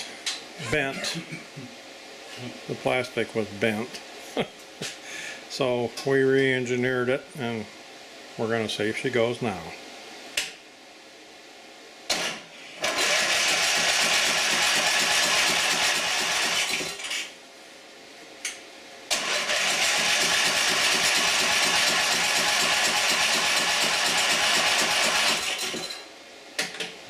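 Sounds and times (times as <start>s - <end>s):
electric starter cranking engine: 12.1s - 17.3s, 19.1s - 26.1s.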